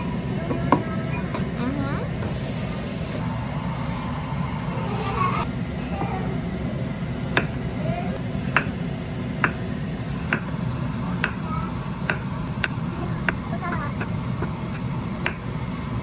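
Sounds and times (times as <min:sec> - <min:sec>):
low hum: 0:00.0 - 0:16.0
knife chopping on cutting board: 0:08.5 - 0:09.6, 0:10.2 - 0:10.5, 0:11.1 - 0:11.4.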